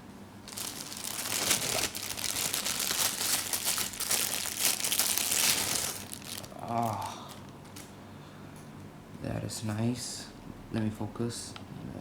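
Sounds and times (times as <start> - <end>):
packaging crinkling and rustling: 0.4 - 7.9.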